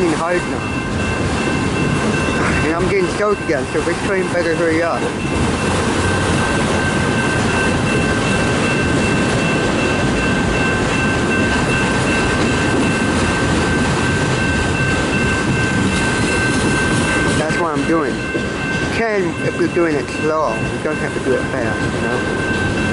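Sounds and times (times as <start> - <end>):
train wheels rumbling on rail: 0.0 - 22.9.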